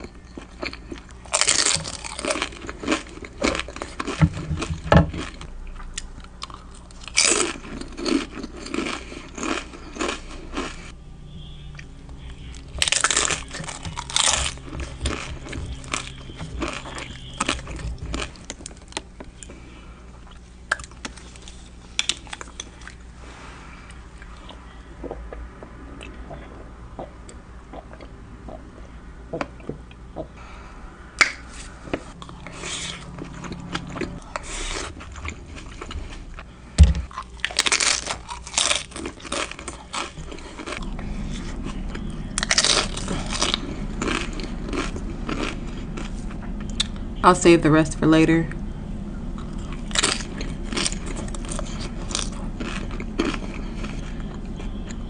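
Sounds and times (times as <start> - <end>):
crunchy bites: 0.6 - 5.5, 12.5 - 19.1, 37.0 - 47.0
wet chewing: 11.7 - 19.5, 32.1 - 47.1, 49.3 - 55.0.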